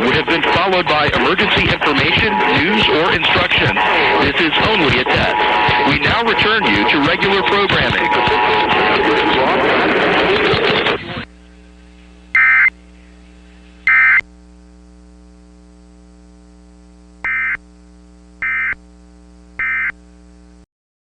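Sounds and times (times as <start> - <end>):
loud noisy audio: 0.0 - 13.5
shrill digital data bursts: 1.3 - 9.5
low electrical hum: 11.0 - 20.7.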